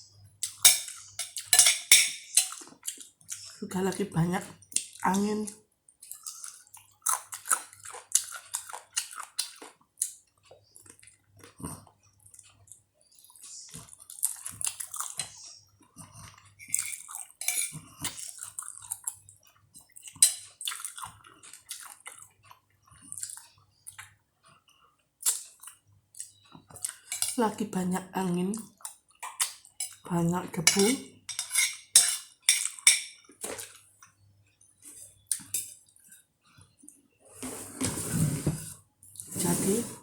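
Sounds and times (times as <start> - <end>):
spoon clinking on a dish: 0.4 - 2.6, 16.6 - 17.8, 30.6 - 33.2
chewing and lip smacks: 18.0 - 24.1.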